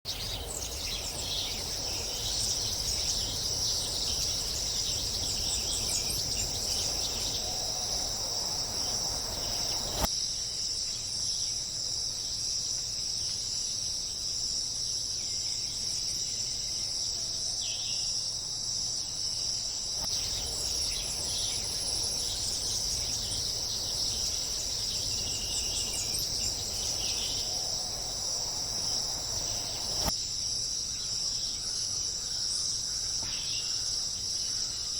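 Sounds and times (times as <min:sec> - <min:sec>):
faint bird chirps: 0:00.1 - 0:10.1, 0:19.0 - 0:30.1
low background ambience: 0:00.1 - 0:10.6, 0:18.8 - 0:30.3
crickets chirring: 0:00.1 - 0:34.9.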